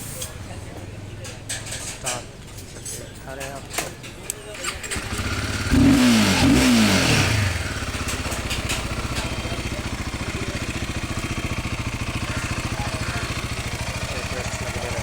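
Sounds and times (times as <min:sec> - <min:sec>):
motorcycle engine revving and idling: 0:04.5 - 0:15.0.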